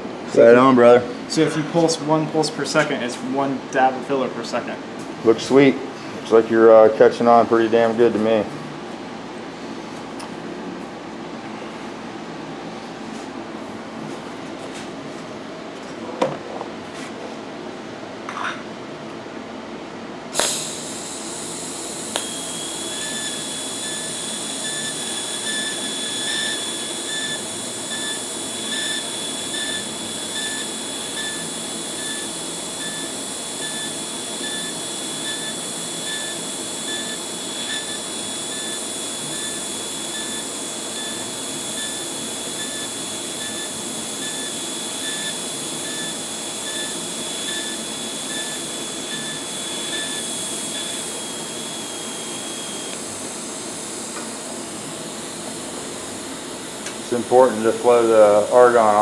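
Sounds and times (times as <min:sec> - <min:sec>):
welding arc hissing: 0:20.3 - 0:59.0
welding arc striking crack: 0:20.4 - 0:54.4.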